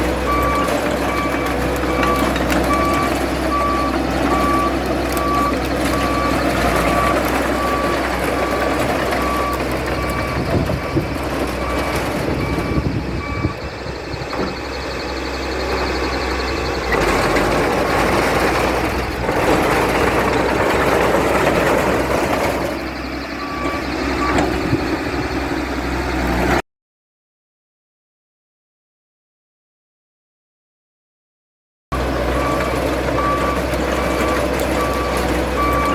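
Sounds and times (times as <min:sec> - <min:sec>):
bulldozer diesel engine running: 0:00.0 - 0:26.6, 0:31.9 - 0:35.9
reversing alarm beeping: 0:00.0 - 0:26.6, 0:32.0 - 0:35.9.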